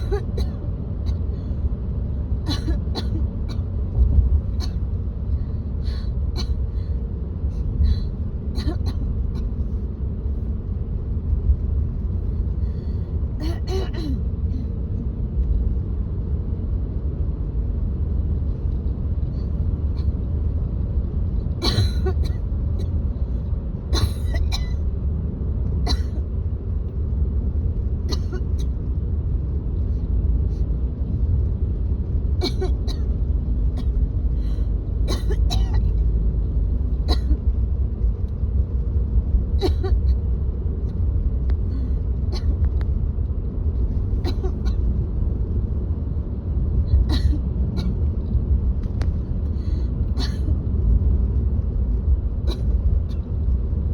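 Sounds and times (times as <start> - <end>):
woman coughing: 0.0 - 0.6, 2.5 - 3.6, 6.4 - 6.6, 8.6 - 9.1, 13.4 - 14.2, 21.6 - 22.4, 24.0 - 24.8, 25.9 - 26.2, 28.1 - 28.5, 32.4 - 33.0, 35.1 - 35.9, 37.1 - 37.4, 39.6 - 40.0, 44.2 - 44.8, 47.0 - 48.0, 50.2 - 50.5
car interior rumble: 0.0 - 53.9.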